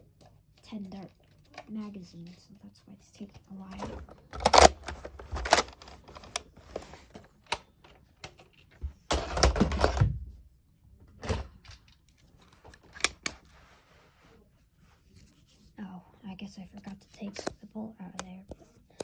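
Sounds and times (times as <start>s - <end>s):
plastic clicks and scrapes: 0.1s - 10.0s, 11.6s - 13.6s, 16.8s - 19.0s.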